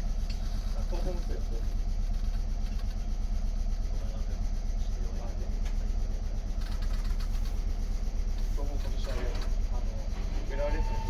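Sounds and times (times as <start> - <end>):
electric train humming: 9.2 - 11.0.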